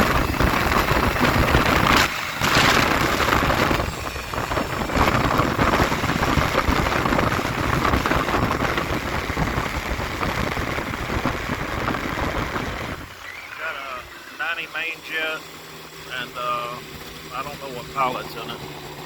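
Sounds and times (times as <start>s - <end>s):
wind buffeting on microphone: 0.0s - 14.2s.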